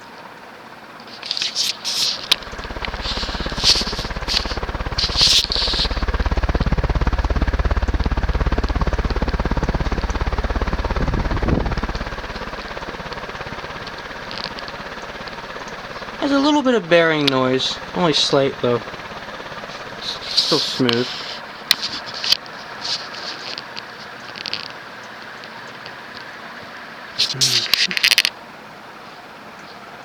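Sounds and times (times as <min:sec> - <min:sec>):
ceiling fan running: 0:00.0 - 0:30.0
short hissy bursts: 0:01.2 - 0:06.4, 0:17.7 - 0:23.4, 0:27.2 - 0:28.0.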